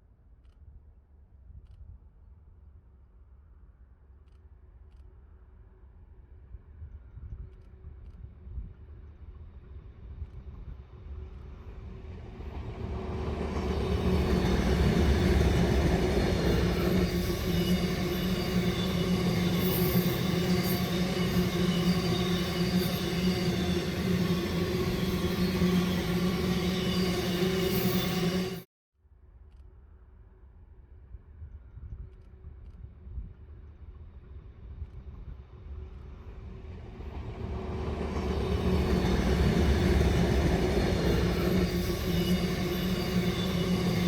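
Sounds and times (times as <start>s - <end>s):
train running past: 9.8s - 28.7s, 35.5s - 44.0s.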